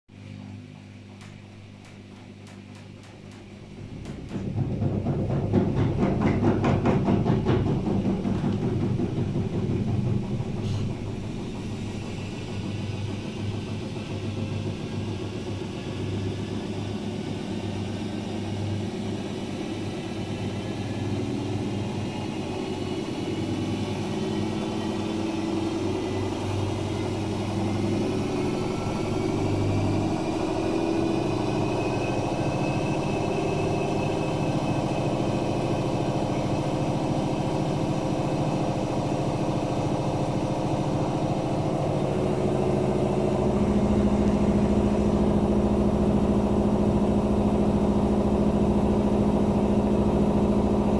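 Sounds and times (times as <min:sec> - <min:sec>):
washing machine spinning: 0:00.1 - 0:50.9
motor whine: 0:10.0 - 0:50.9.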